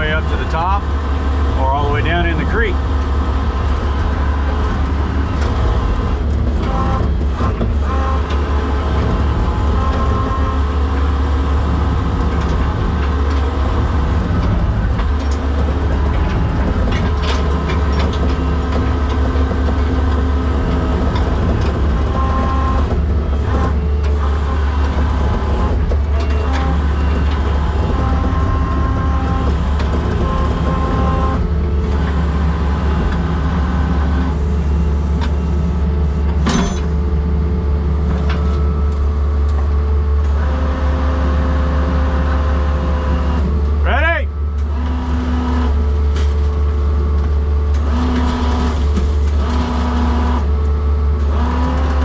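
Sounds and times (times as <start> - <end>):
engine running under load: 0.0 - 52.0.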